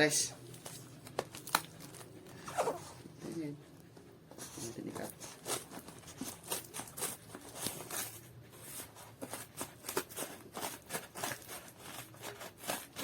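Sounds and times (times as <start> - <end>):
cardboard rustling and tearing: 4.9 - 13.0.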